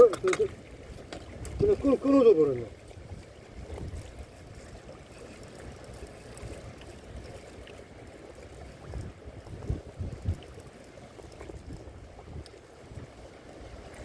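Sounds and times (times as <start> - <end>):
moving water: 0.0 - 14.0
strong wind on microphone: 8.8 - 10.5.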